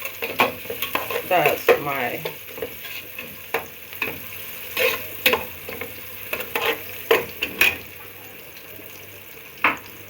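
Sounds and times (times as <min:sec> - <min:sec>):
spoon scraping a pot: 0:00.0 - 0:07.9
onions sizzling in oil: 0:00.0 - 0:10.0.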